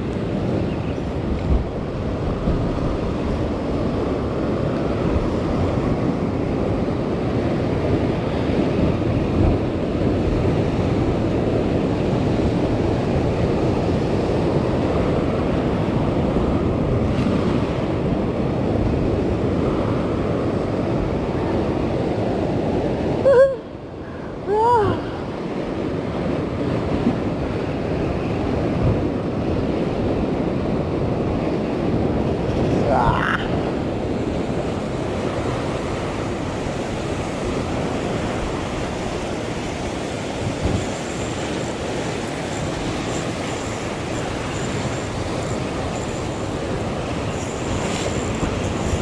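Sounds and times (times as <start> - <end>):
wind buffeting microphone: 0.0 - 49.0
waves washing on rocky shore: 24.5 - 49.0.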